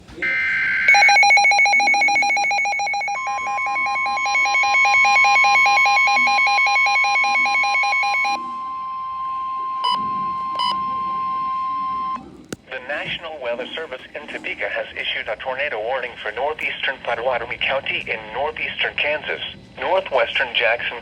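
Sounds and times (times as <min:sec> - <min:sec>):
steady warning tone: 0:00.1 - 0:12.4
pulsing electronic alarm tone: 0:00.2 - 0:12.2
data burst: 0:09.6 - 0:11.3.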